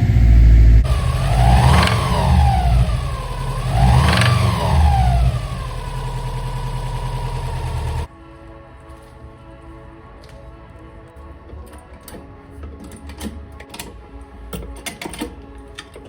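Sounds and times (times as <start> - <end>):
car engine revving and idling: 0.0 - 8.1.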